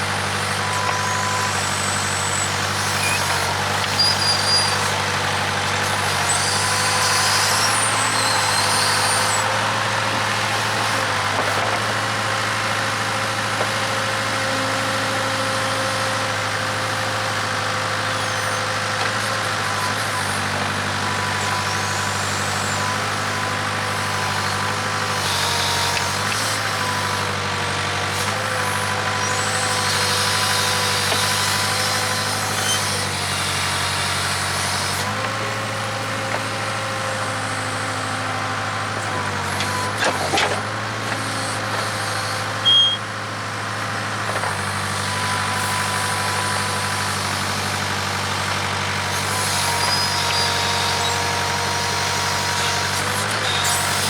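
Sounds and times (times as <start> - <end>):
backhoe diesel engine under load: 0.0 - 54.0
hydraulic whine: 0.0 - 54.0
high squeals: 4.0 - 4.9, 6.4 - 9.5, 42.5 - 43.1.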